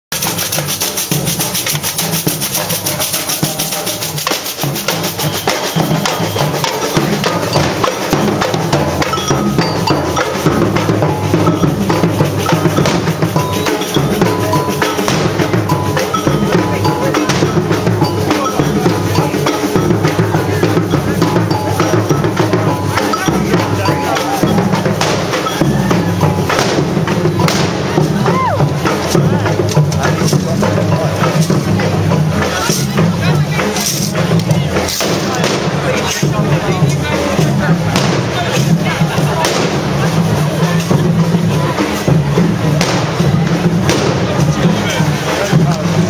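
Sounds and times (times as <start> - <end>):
snare drum beating: 0.1 - 29.2, 33.8 - 36.2, 37.9 - 40.0, 42.8 - 44.5
bass drum beating: 0.1 - 46.0
procession band drums: 0.1 - 46.0.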